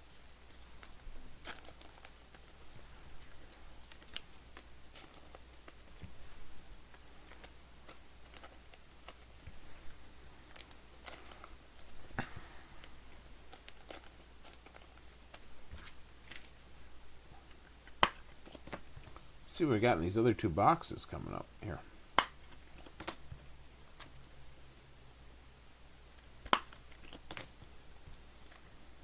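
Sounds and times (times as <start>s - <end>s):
wrappers rustling: 0.1s - 19.6s
trading cards clicking and rustling: 0.4s - 2.6s, 3.2s - 6.2s, 7.0s - 9.7s, 10.4s - 16.6s, 17.8s - 19.3s, 21.7s - 24.3s, 26.4s - 28.7s.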